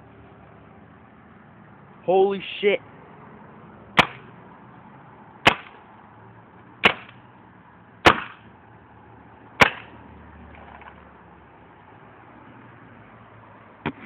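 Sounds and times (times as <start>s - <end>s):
paintball gun shots: 4.0s - 4.2s, 5.4s - 5.8s, 6.8s - 7.2s, 8.0s - 8.4s, 9.6s - 9.9s.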